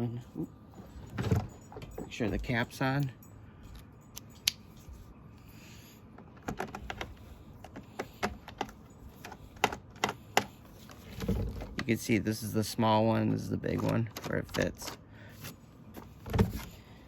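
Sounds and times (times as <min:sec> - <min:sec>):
plastic parts clicking and tapping: 0:06.2 - 0:11.9, 0:13.3 - 0:15.0.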